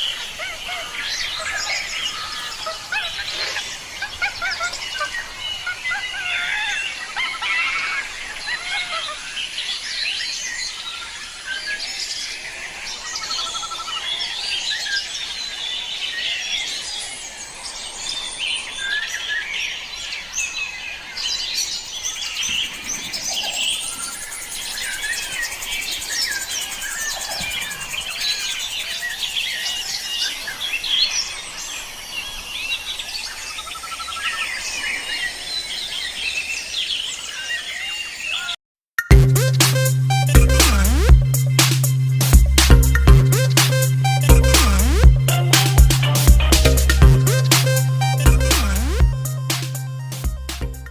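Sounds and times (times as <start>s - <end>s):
small birds chirping and trilling: 0.0s - 38.6s.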